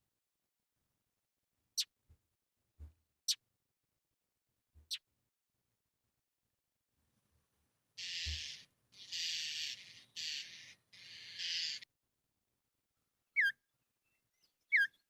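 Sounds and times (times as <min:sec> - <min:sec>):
mockingbird harsh raspy phrases: 0:08.0 - 0:11.8.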